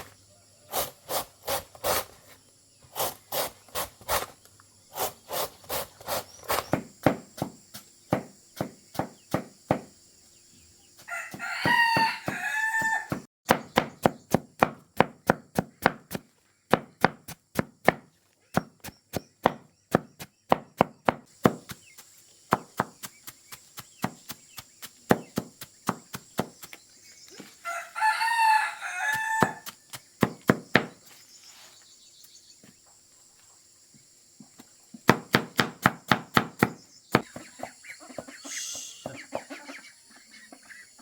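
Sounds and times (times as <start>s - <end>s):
chopping strokes: 0.7s - 2.2s, 2.9s - 9.9s, 11.0s - 26.8s
rooster crowing: 11.1s - 13.2s, 27.6s - 29.7s.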